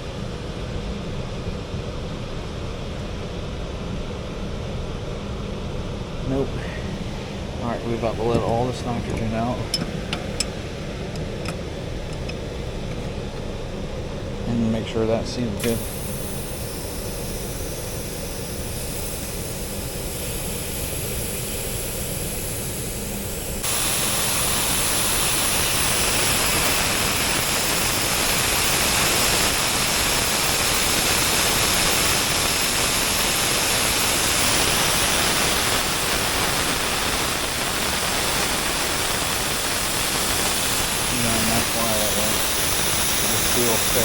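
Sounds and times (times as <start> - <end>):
pressurised gas hissing from hoses: 6.3 - 12.4, 15.4 - 44.0.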